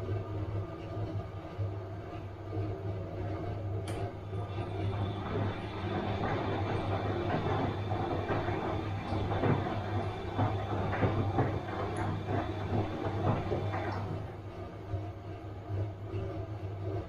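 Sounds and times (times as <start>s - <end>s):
washing machine motor hum: 0.0s - 17.0s
washing machine drum churning: 2.7s - 15.3s.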